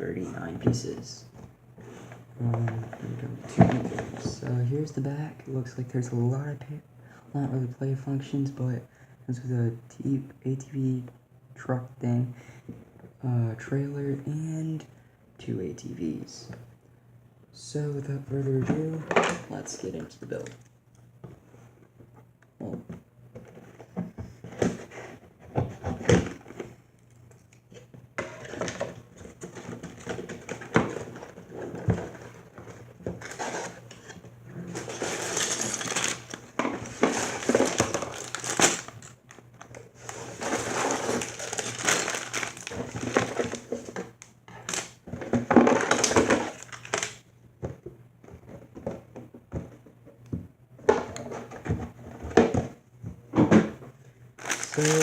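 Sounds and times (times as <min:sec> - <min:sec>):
rustling and tearing: 0:33.2 - 0:44.0, 0:54.4 - 0:55.0.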